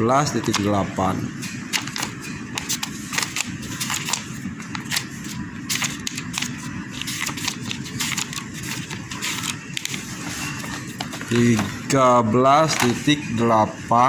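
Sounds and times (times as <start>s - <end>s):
paper pages rustling: 1.7s - 11.8s.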